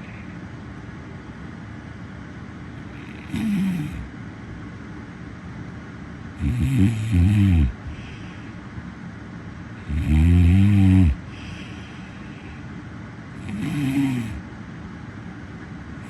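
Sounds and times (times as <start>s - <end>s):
person snoring: 2.9s - 4.1s, 6.4s - 8.4s, 9.8s - 12.0s, 13.4s - 14.4s.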